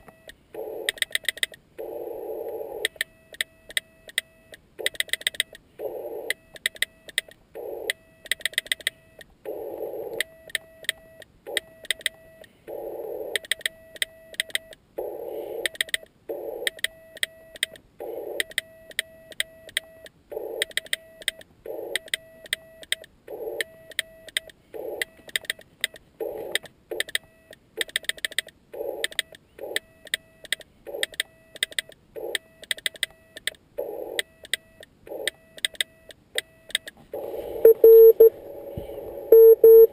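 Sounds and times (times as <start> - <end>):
morse code beeps: 28.8 - 39.9
radio band hiss: 37.2 - 39.4.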